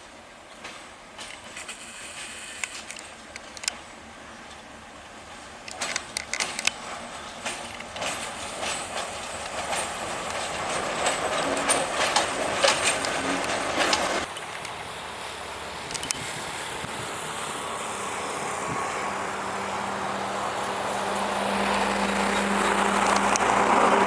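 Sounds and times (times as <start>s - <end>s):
railway cars rolling past: 0.0s - 24.0s
train wheels clacking over rail joints: 0.5s - 4.6s, 5.6s - 14.9s.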